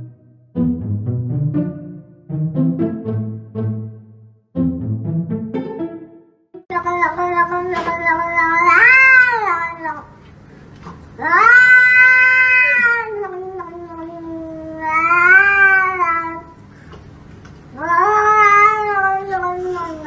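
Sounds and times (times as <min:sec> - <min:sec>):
cat yowling: 0:06.9 - 0:10.1, 0:11.2 - 0:16.5, 0:17.8 - 0:20.0.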